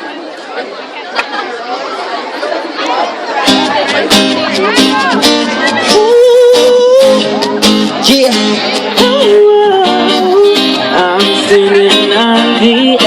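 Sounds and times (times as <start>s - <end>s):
acoustic guitar: 3.2s - 13.0s
men singing a pop song: 8.1s - 13.0s.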